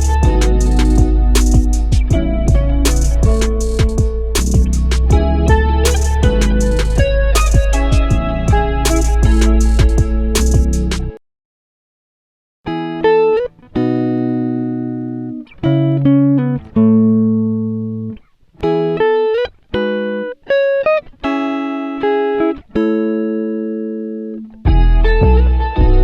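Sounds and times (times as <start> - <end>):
heavy bass: 0.0 - 11.2, 24.7 - 26.0
plucked guitar-like chords: 0.0 - 11.2, 12.7 - 26.0.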